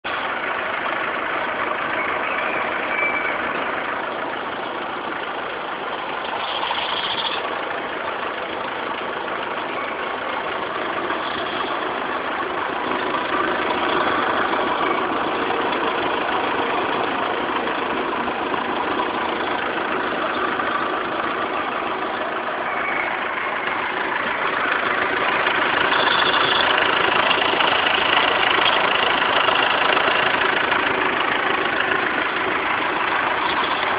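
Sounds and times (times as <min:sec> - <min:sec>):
diesel engine idling: 0:00.0 - 0:33.9
short high chirp: 0:02.0 - 0:03.5.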